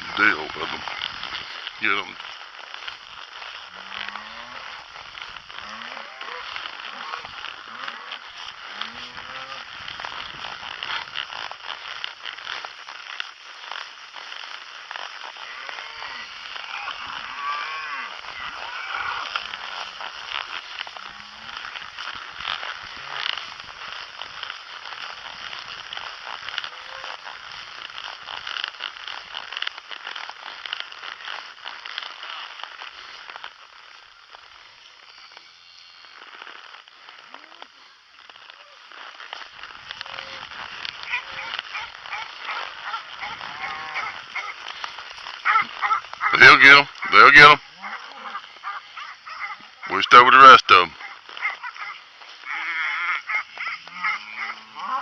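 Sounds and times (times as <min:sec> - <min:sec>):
crackling rustle: 0:00.0 - 0:55.0
cattle mooing: 0:15.4 - 0:22.9.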